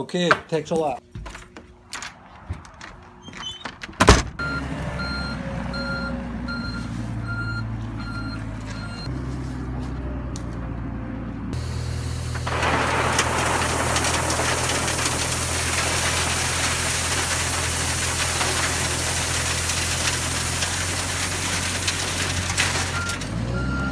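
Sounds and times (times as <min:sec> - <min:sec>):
reversing alarm beeping: 0:04.4 - 0:09.1, 0:22.9 - 0:23.9
heavy vehicle engine running: 0:04.4 - 0:23.9.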